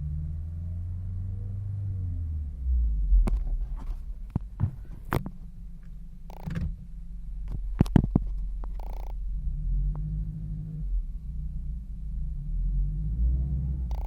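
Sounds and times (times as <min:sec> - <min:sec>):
car engine humming: 0:00.0 - 0:14.0
sharp clicks and knocks: 0:03.2 - 0:06.8, 0:07.4 - 0:09.2.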